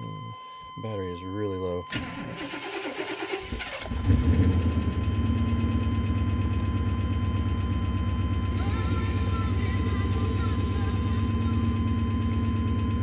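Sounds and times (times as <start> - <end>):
car engine starting: 1.9 - 13.0
engine idling with lifter tap: 4.5 - 8.5.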